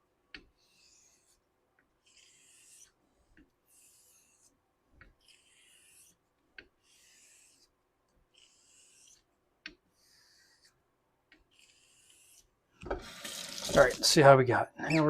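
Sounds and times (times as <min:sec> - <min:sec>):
razor blade stroking whetstone: 0:00.6 - 0:01.4, 0:02.0 - 0:06.2, 0:06.8 - 0:07.7, 0:08.3 - 0:09.3, 0:09.9 - 0:10.8, 0:11.5 - 0:12.5.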